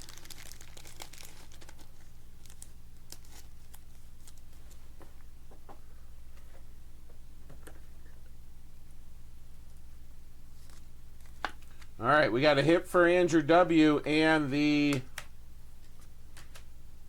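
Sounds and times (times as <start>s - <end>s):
plastic card sleeves crinkling: 0.0s - 4.8s, 10.5s - 12.0s
low steady hum: 0.0s - 17.0s.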